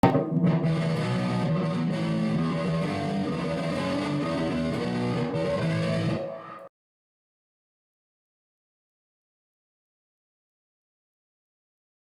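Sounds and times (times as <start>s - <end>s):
strummed electric guitar music: 0.0s - 6.7s.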